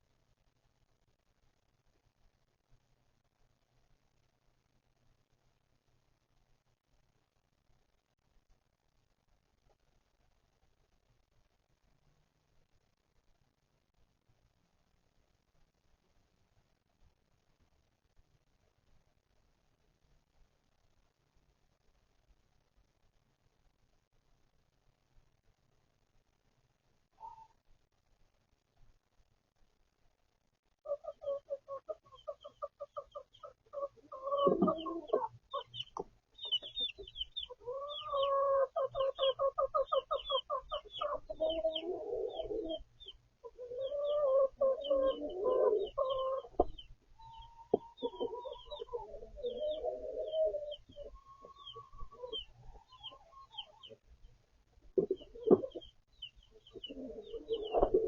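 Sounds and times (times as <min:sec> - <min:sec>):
chickens clucking: 0:30.8 - 0:54.0, 0:54.8 - 0:58.0
chicks peeping: 0:30.8 - 0:54.0, 0:54.8 - 0:58.0.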